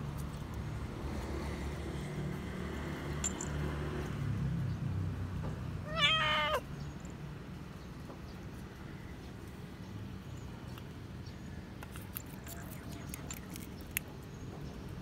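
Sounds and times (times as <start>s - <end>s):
cat meowing: 5.8s - 6.7s.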